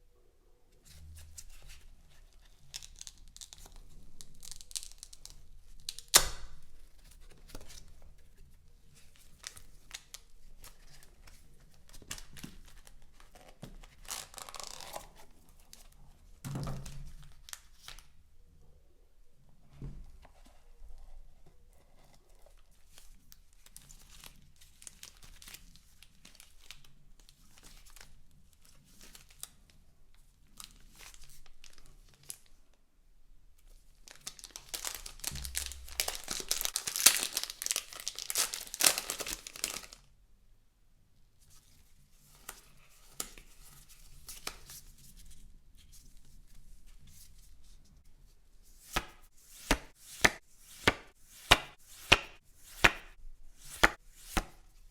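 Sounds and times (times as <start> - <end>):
packaging crinkling: 2.6 - 6.2, 12.0 - 15.2, 34.0 - 40.1
packaging tearing: 14.0 - 15.2, 34.1 - 40.0.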